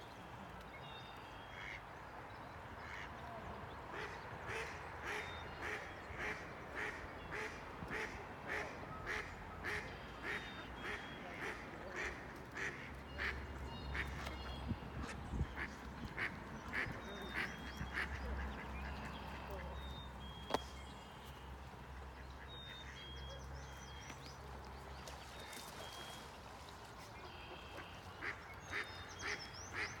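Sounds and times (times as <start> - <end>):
ducks quacking: 1.6 - 1.8, 2.8 - 3.1, 3.9 - 20.6, 27.1 - 30.0.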